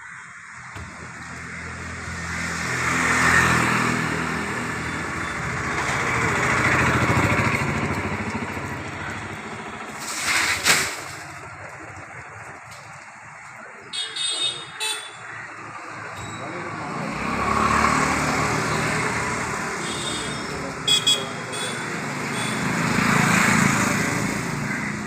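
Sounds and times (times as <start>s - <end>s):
engine running: 0.8s - 13.0s.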